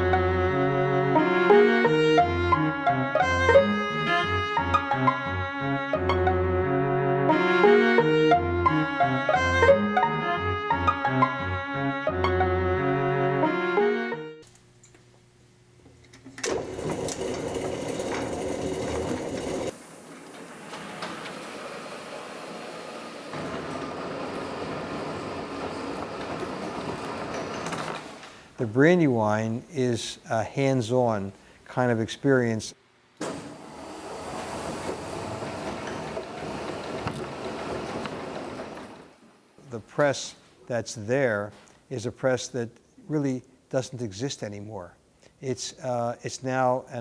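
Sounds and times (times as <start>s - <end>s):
printing press clattering: 16.4s - 22.0s, 34.4s - 39.2s
hissing machine noise: 16.4s - 28.5s, 33.2s - 39.3s.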